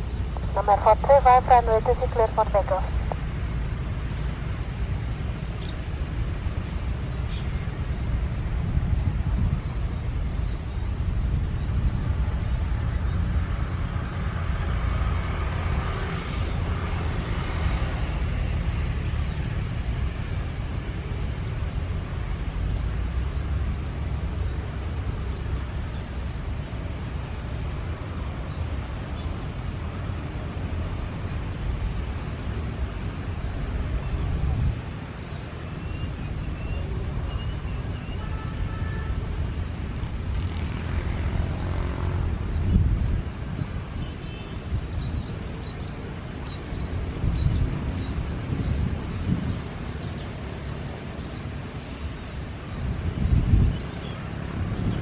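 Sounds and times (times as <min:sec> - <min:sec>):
jet engines rumbling: 0:00.0 - 0:35.6.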